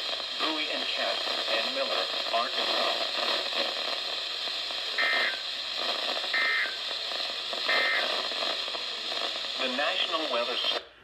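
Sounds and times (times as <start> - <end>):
weather radio hiss: 0.0 - 11.0
electronic data bursts: 5.0 - 6.8, 7.6 - 8.6.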